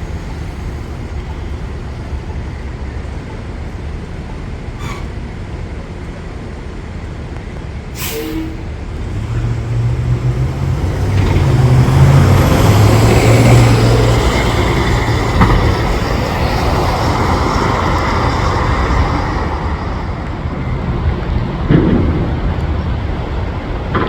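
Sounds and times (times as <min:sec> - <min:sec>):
bus engine drone: 0:00.0 - 0:24.0
rushing road noise: 0:00.0 - 0:24.0
turbo whistle: 0:04.8 - 0:05.1, 0:08.0 - 0:08.8.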